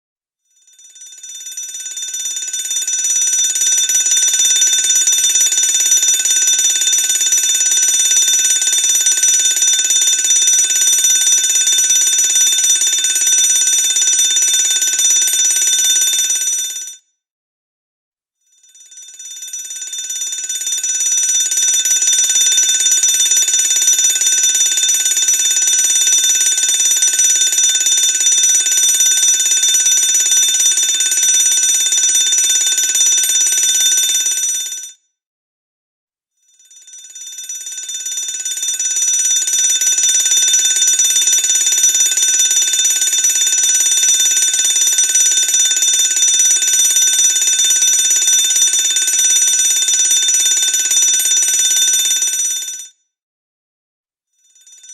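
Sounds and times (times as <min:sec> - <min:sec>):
fire alarm bell ringing: 0:03.3 - 0:16.6, 0:21.3 - 0:34.5, 0:38.1 - 0:52.2.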